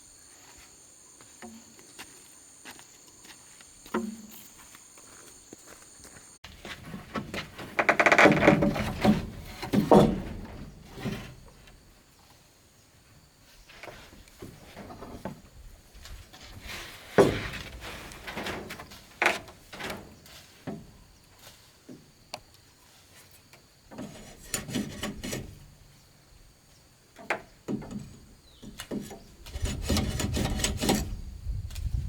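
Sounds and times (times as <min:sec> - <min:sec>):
wood knocking and scraping: 0:06.4 - 0:11.9, 0:13.7 - 0:21.1, 0:23.9 - 0:25.7, 0:27.2 - 0:31.3.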